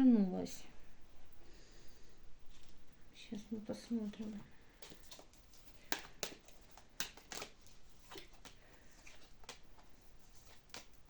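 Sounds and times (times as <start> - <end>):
cards slapping and rustling: 4.2 - 11.0.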